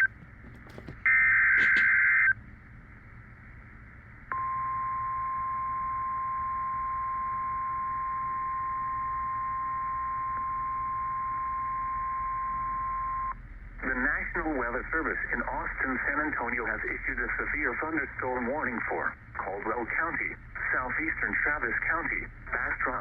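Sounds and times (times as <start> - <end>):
steady warning alarm tone: 1.0 - 2.3.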